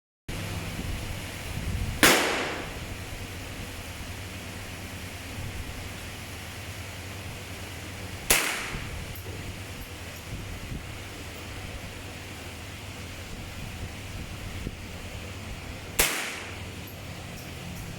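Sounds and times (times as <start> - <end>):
rifle shots: 2.0 - 2.9, 8.2 - 8.9, 16.0 - 16.7.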